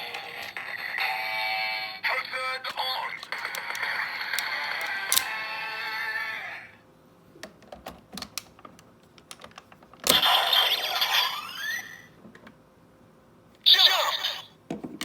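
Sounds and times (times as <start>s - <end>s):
toy belt electronic sound effects: 3.1s - 6.4s, 10.1s - 12.1s, 13.7s - 14.5s.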